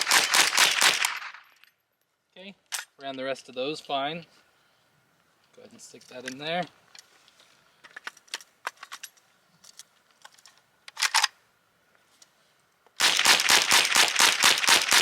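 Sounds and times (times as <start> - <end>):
rapid rifle shots: 0.0 - 1.4, 13.0 - 15.0.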